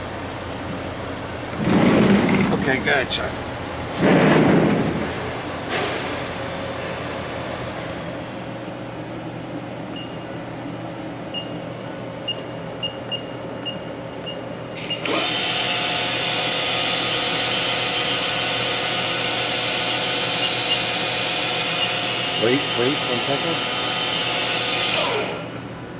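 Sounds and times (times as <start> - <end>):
machine hum: 0.0 - 25.9
spindle whine: 7.8 - 25.7
short electronic beeps: 9.9 - 10.3, 11.3 - 15.1, 16.6 - 16.8, 18.1 - 18.3, 19.2 - 20.8, 21.8 - 22.0.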